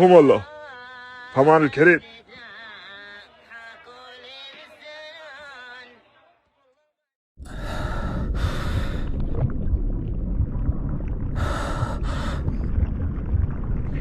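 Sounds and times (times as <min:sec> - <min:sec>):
heavy breathing gasps: 0:07.4 - 0:09.2, 0:11.4 - 0:12.7
deep rumbling drone: 0:07.4 - 0:14.0.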